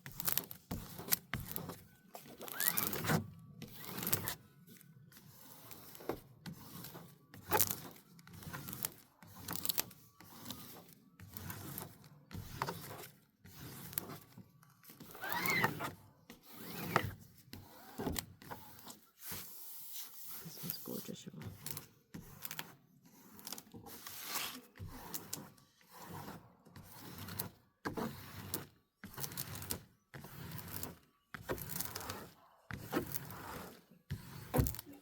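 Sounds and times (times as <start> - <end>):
packaging crackling and rustling: 0.0 - 4.9.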